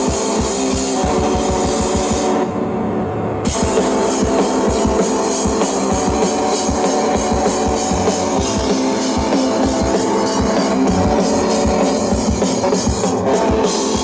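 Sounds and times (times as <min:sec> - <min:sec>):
fast kick-drum beat: 0:00.0 - 0:02.4, 0:03.5 - 0:14.0
sustained synth tones: 0:02.4 - 0:14.0.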